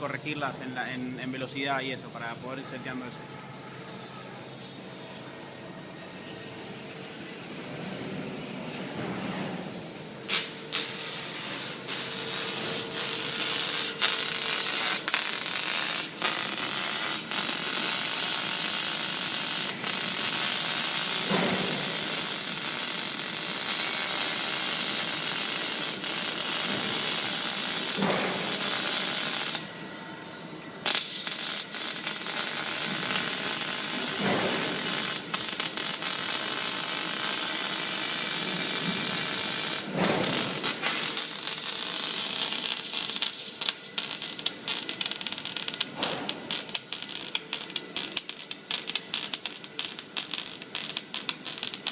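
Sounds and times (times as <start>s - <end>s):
welding arc crackling: 10.3s - 29.7s, 30.8s - 51.9s.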